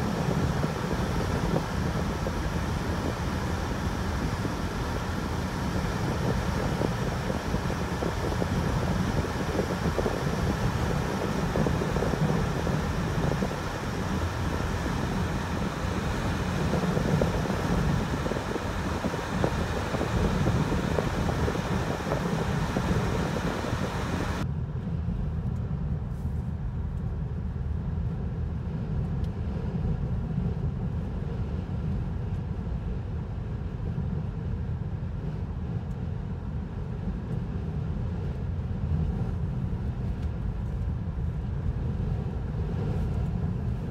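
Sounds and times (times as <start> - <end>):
vehicle rumble: 0.0 - 43.9.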